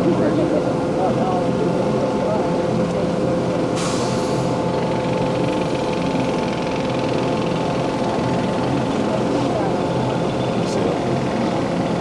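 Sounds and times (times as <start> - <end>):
ship engine drone: 0.0 - 12.0.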